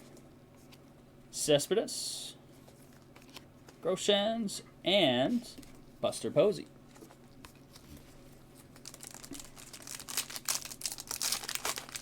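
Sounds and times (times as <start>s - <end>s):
foil wrapper tearing and crinkling: 8.8s - 12.0s.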